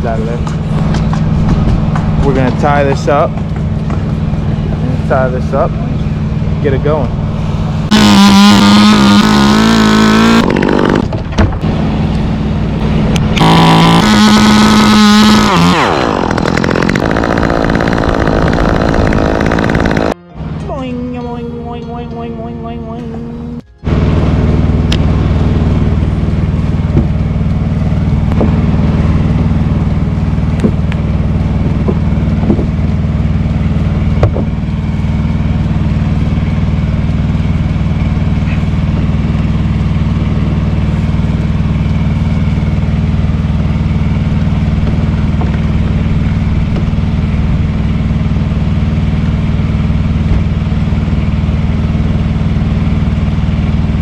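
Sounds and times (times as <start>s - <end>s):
engine running steadily: 0.0s - 54.0s
sharp knocks and clicks: 0.4s - 2.3s.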